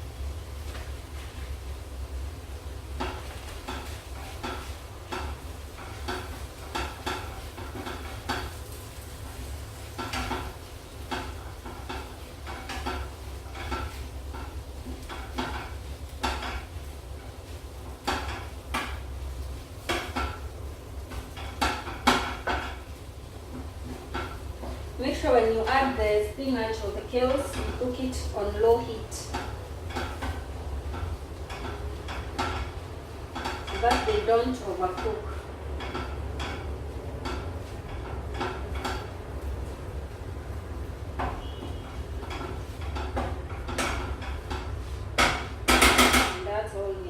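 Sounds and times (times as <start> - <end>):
utensil scraping frying pan: 0.0 - 46.8
steady low hum: 0.0 - 47.0.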